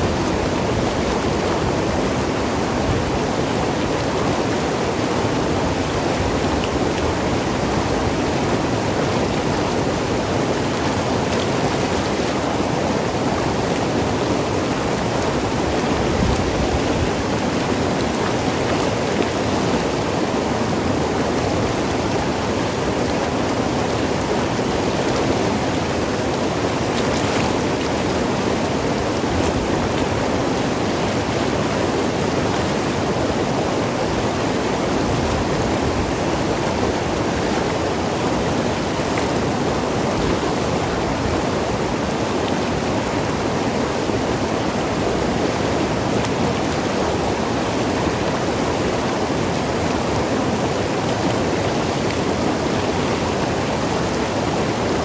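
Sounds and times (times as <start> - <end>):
river rushing over rocks: 0.0 - 55.0.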